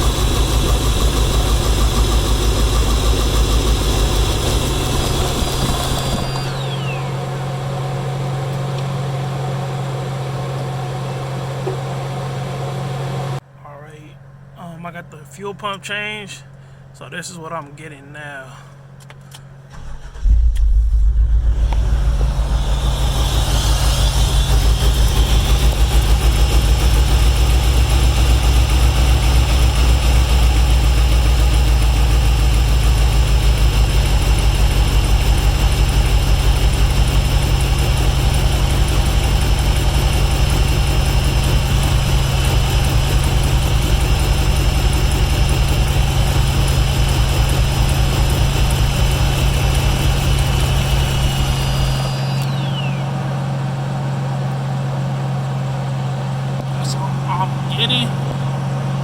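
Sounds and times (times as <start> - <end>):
car engine idling: 0.0 - 13.4, 18.8 - 59.0
thin steady whine: 13.4 - 54.6, 56.3 - 59.0.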